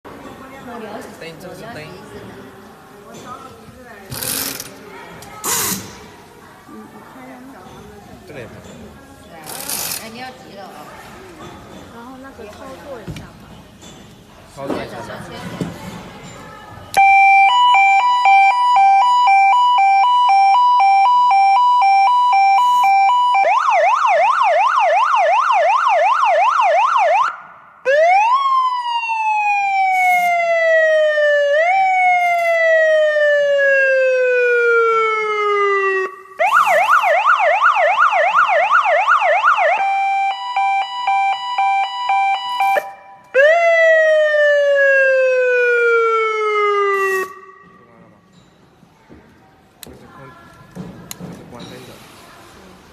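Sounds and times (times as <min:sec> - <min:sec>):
siren wail: 0:17.0 - 0:47.9
siren yelp: 0:17.0 - 0:47.9.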